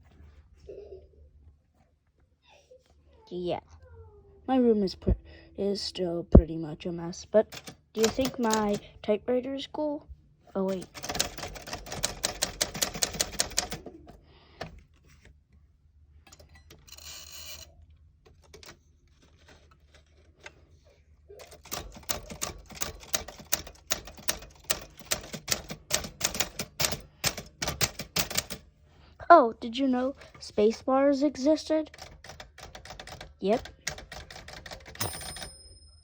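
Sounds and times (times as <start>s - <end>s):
typewriter key clacks: 7.4s - 8.9s, 10.7s - 13.8s, 21.4s - 28.6s, 31.9s - 35.5s.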